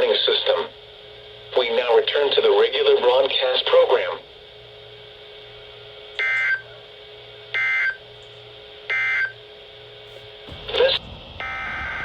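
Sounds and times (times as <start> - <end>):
faint steady hum: 0.0 - 12.0
two-tone digital data warble: 10.6 - 12.0.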